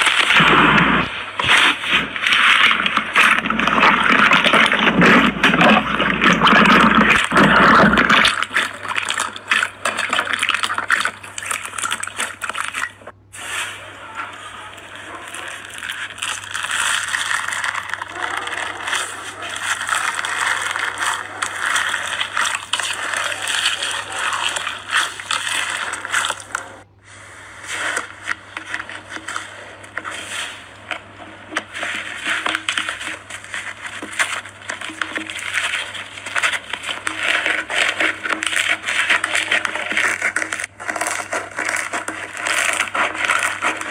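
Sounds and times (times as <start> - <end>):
slime squeezed by hand crackling: 0.0 - 26.8.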